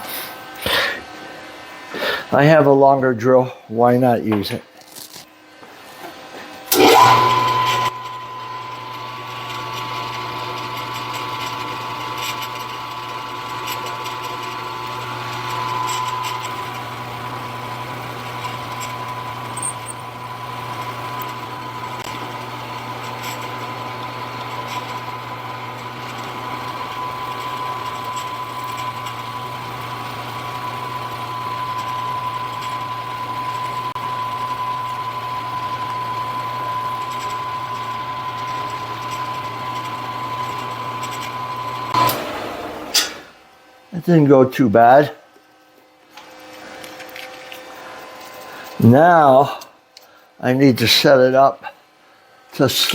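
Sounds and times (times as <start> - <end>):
milling machine motor whine: 5.6 - 43.9.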